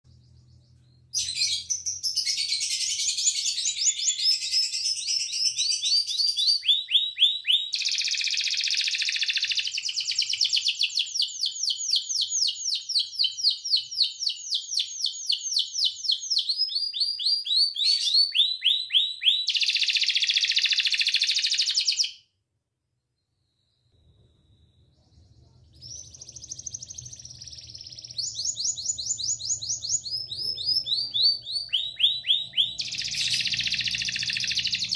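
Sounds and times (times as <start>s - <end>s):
canary singing trills: 0.1s - 22.2s, 24.8s - 34.9s.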